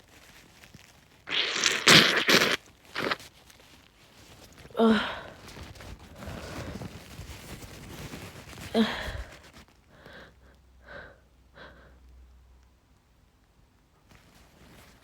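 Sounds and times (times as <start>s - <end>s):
woman gasping: 4.7s - 5.5s, 8.7s - 9.4s.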